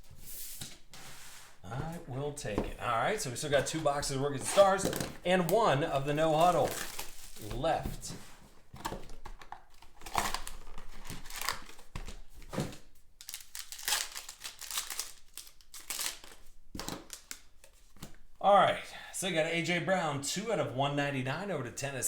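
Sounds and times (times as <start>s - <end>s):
wrappers crinkling and tearing: 4.4s - 7.7s, 8.9s - 12.3s, 13.2s - 17.7s.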